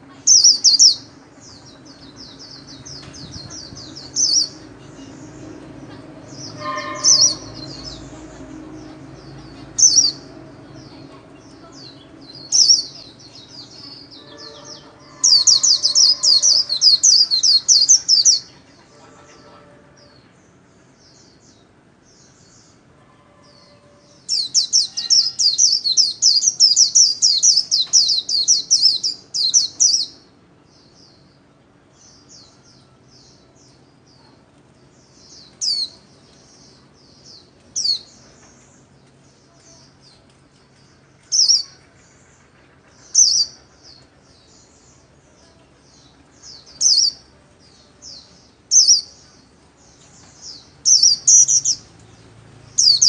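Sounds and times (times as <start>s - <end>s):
bird twittering song: 0.0s - 53.0s
high bird chirps: 6.3s - 18.6s.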